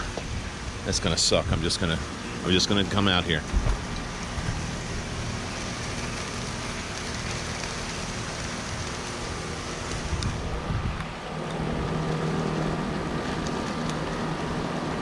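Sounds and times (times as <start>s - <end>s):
steady rain: 0.0s - 15.0s
wind gusts rumbling: 8.0s - 15.0s.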